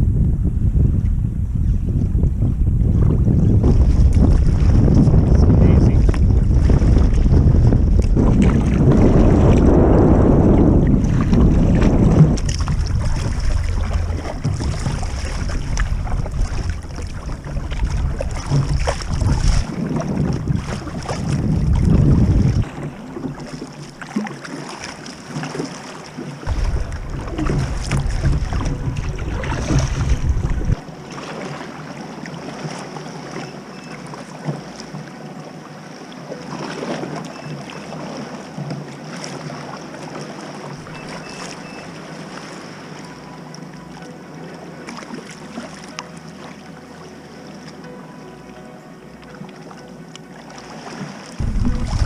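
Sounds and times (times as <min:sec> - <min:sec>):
wind buffeting microphone: 0:00.0 - 0:23.6, 0:26.4 - 0:30.9, 0:51.4 - 0:52.0
water splashing against boat: 0:00.0 - 0:52.0.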